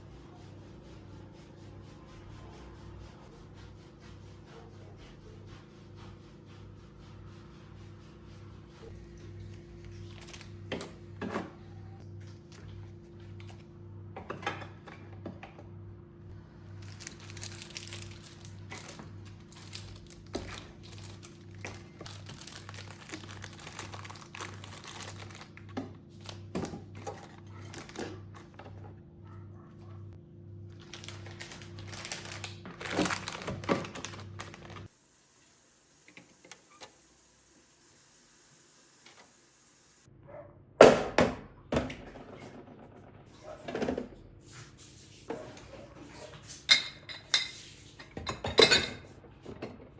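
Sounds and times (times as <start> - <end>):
packaging crinkling and rustling: 9.8 - 10.7, 16.8 - 28.2, 30.7 - 34.9.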